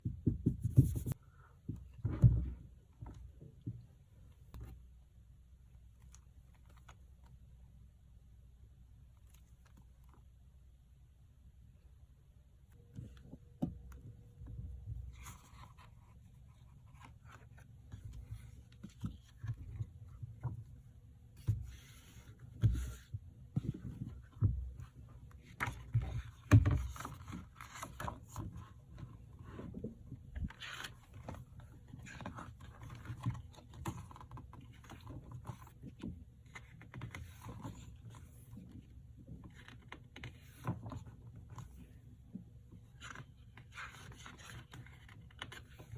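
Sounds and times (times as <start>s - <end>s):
soft knocks and thumps: 0.0s - 4.8s.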